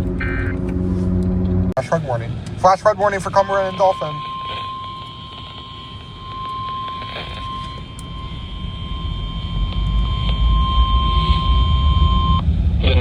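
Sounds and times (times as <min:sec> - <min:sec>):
low rumble: 0:00.0 - 0:13.0
high alarm beep: 0:02.6 - 0:12.4.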